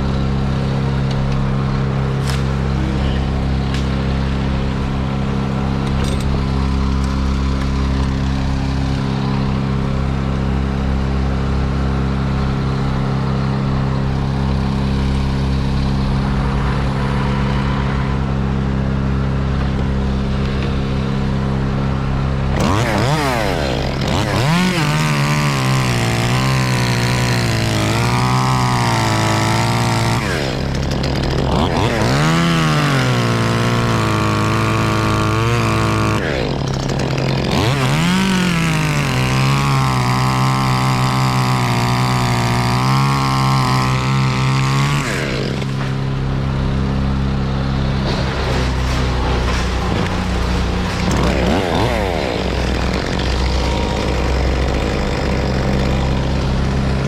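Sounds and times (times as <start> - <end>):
engine running steadily: 0.0 - 22.7, 45.2 - 57.0
chainsaw revving and cutting: 0.0 - 57.0.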